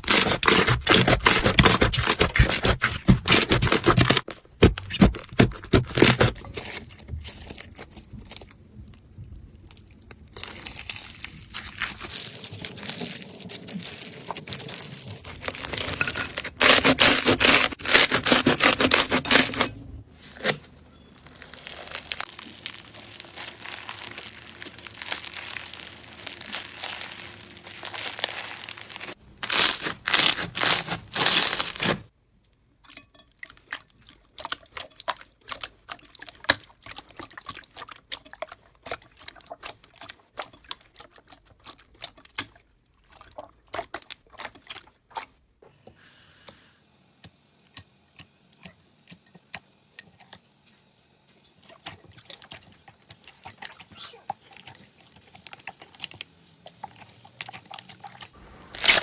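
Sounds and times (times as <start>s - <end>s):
slime crackling and popping: 21.1s - 32.1s, 57.4s - 59.0s.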